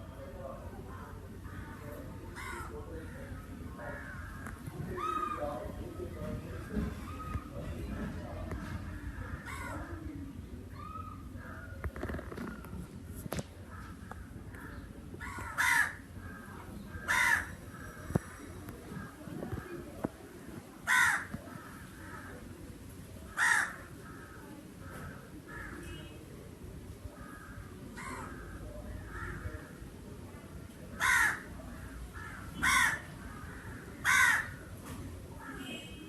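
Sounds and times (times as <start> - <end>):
faint crow caws: 1.4 - 5.8, 8.5 - 10.0, 13.6 - 19.7, 20.8 - 22.5, 23.3 - 26.2, 27.1 - 29.8, 31.0 - 36.0
crow cawing harshly: 2.3 - 5.4, 9.0 - 9.9, 14.6 - 18.0, 20.8 - 22.4, 23.3 - 26.0, 27.2 - 29.8, 31.0 - 34.7.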